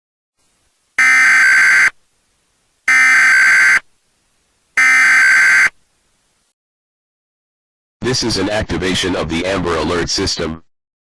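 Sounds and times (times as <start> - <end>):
buzzy digital data tones: 1.0 - 1.9, 2.9 - 3.8, 4.8 - 5.7.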